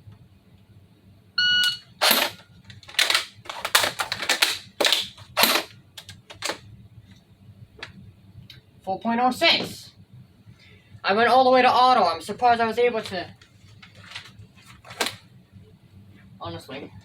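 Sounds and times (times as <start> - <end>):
shot timer beep: 1.4 - 1.9.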